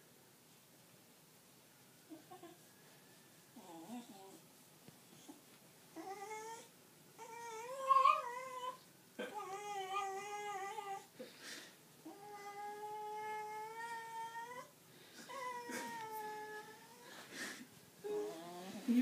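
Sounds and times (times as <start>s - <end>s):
dog whining: 3.6s - 4.4s, 5.2s - 11.1s, 12.0s - 17.2s, 18.0s - 18.9s.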